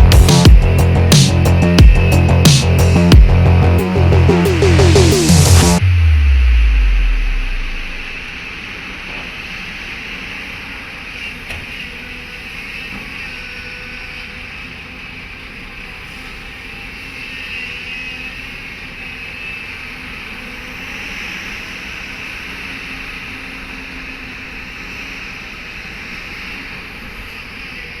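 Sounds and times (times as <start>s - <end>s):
diesel engine running: 0.0s - 8.4s
high whine: 0.0s - 13.4s.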